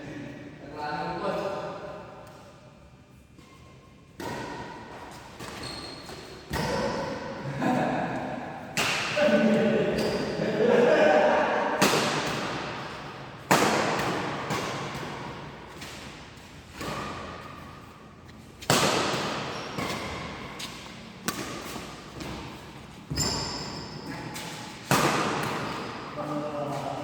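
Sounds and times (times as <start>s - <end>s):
rackets hitting shuttlecock: 4.2s - 7.3s, 8.7s - 9.3s, 11.8s - 17.6s, 18.3s - 22.5s, 24.4s - 26.2s
shoe squeak: 5.4s - 7.0s, 9.9s - 10.4s, 19.4s - 21.0s, 23.1s - 24.6s.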